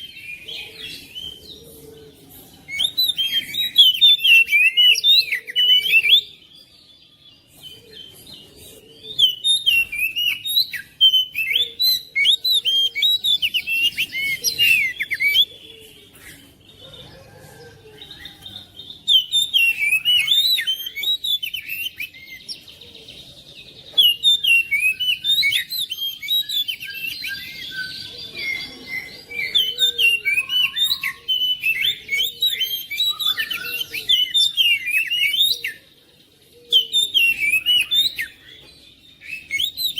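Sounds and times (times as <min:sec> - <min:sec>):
bird singing whistled phrases: 0:19.1 - 0:22.4, 0:24.0 - 0:35.8, 0:36.7 - 0:38.5, 0:39.2 - 0:39.9.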